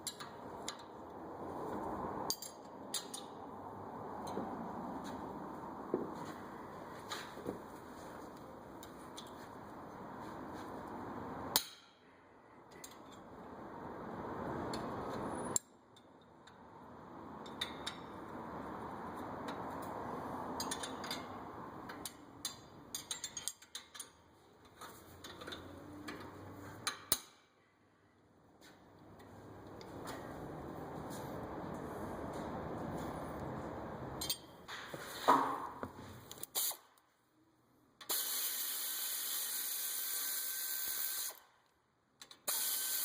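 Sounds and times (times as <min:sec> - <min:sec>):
wrench and socket clinks: 0:20.6 - 0:21.3, 0:22.4 - 0:24.2, 0:34.2 - 0:34.5.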